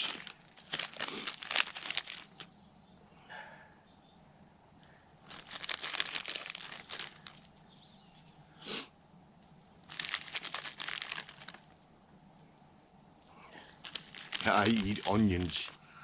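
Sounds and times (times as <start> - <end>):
hands crunching in garden soil: 0.0 - 2.6, 5.2 - 8.4, 9.8 - 11.9, 13.6 - 15.8.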